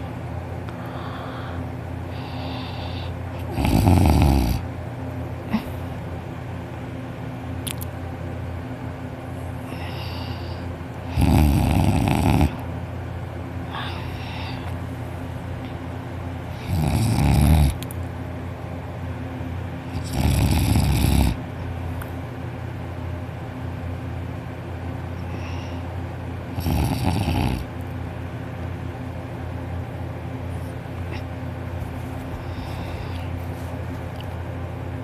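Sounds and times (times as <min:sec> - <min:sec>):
steady low hum: 0:00.0 - 0:35.0
person snoring: 0:09.7 - 0:12.6, 0:16.6 - 0:17.8, 0:20.0 - 0:21.4, 0:26.6 - 0:27.7.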